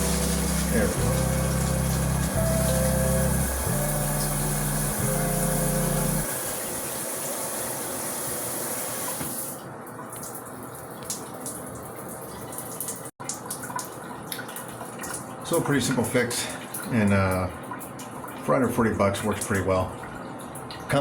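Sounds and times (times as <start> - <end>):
water spraying from shower head: 0.0 - 9.5.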